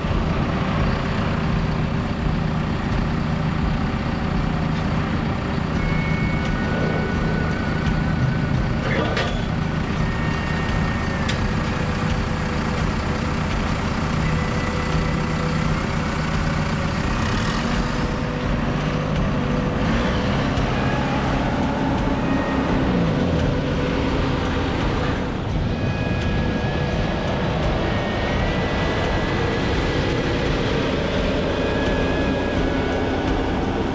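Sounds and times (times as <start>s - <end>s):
faint high whine: 0.0s - 18.6s
diesel engine running under load: 0.0s - 33.9s.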